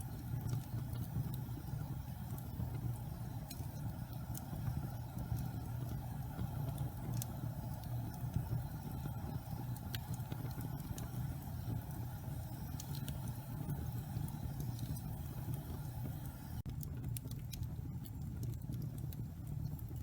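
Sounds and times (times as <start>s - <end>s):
wood fire crackling and popping: 0.0s - 20.0s.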